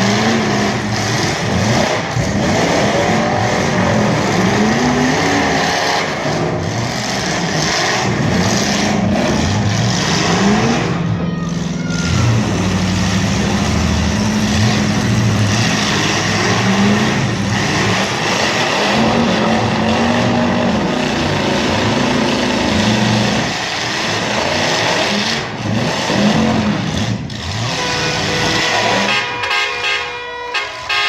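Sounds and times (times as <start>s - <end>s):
car engines revving: 0.0s - 31.0s.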